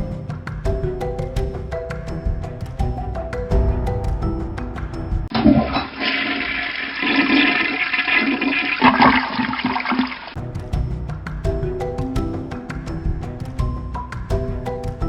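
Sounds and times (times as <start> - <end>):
toilet flushing: 5.3 - 10.4.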